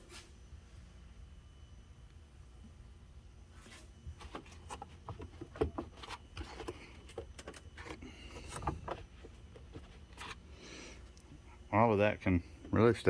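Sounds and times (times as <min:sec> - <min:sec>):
plastic parts clicking and scraping: 0:04.2 - 0:10.4.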